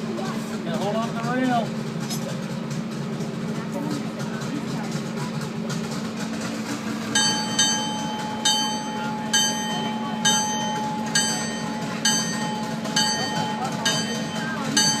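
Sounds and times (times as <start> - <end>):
train humming: 0.0 - 15.0
locomotive bell ringing: 6.4 - 15.0.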